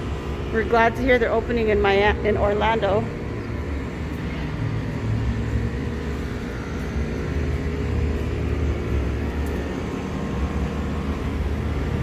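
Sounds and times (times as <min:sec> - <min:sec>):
low traffic rumble: 0:00.0 - 0:12.0.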